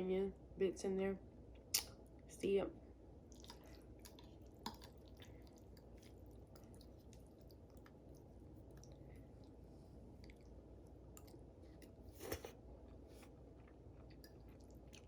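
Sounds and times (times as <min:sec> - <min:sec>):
faint chewing: 0:03.3 - 0:15.0.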